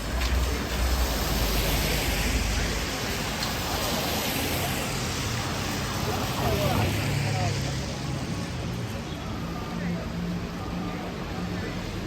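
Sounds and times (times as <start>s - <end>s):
rain hissing: 0.0s - 8.1s
wet traffic: 0.0s - 12.0s.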